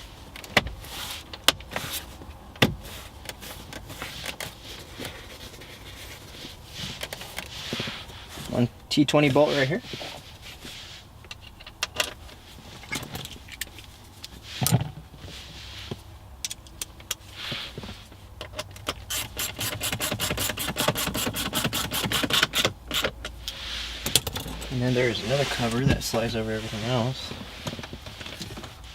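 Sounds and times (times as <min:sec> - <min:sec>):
ratchet clicking: 0:19.0 - 0:23.1.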